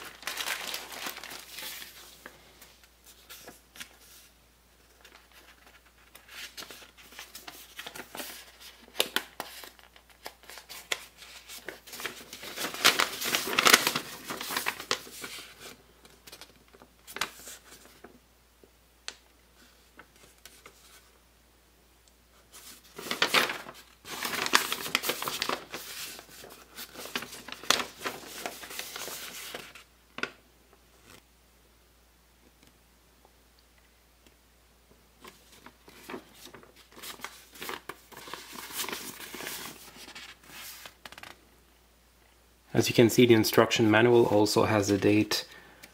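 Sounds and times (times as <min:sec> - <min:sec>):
packaging crinkling and rustling: 0:00.0 - 0:04.3, 0:04.9 - 0:18.2, 0:22.6 - 0:30.4, 0:35.2 - 0:41.4.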